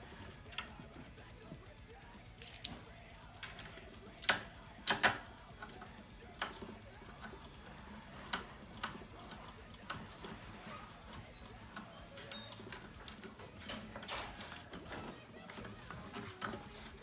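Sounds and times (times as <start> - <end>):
scooter parts clicking and knocking: 2.4 - 7.4.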